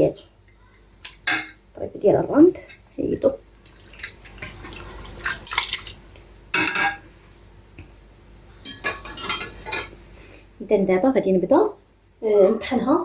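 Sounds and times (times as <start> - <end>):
kitchen utensils clattering on a pot: 1.0 - 1.6, 3.8 - 6.0, 6.6 - 7.0, 8.6 - 10.0.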